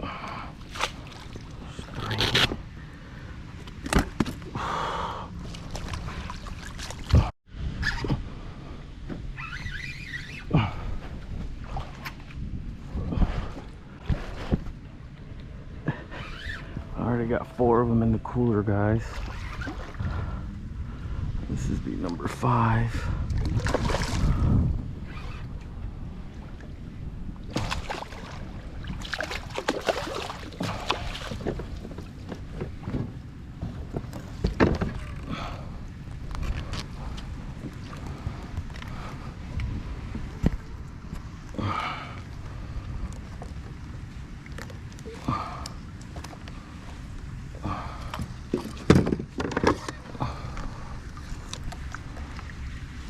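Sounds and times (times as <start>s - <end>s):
wind rumble on microphone: 0.0s - 53.0s
kayak handling knocks and rattles: 3.6s - 4.6s, 29.0s - 41.3s, 47.7s - 52.4s.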